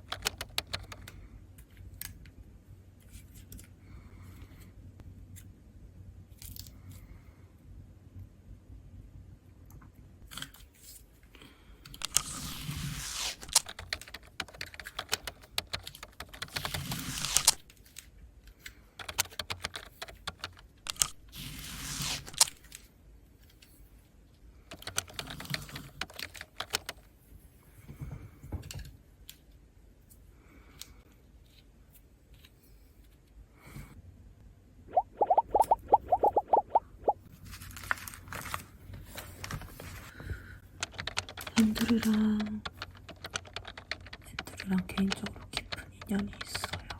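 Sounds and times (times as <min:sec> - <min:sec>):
sharp clicks: 0:00.0 - 0:01.1.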